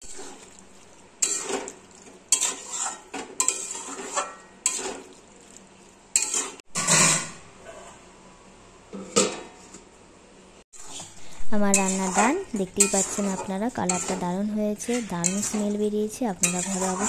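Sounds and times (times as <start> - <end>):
spoon scraping and clinking in pan: 1.2 - 5.2, 6.1 - 8.0, 10.8 - 17.0.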